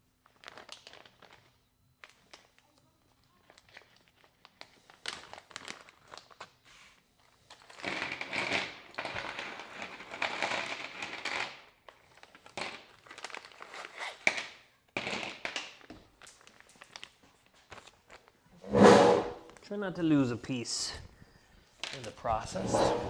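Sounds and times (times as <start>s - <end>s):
plastic bag crinkling: 0.2s - 2.6s, 3.4s - 6.6s, 11.9s - 13.7s.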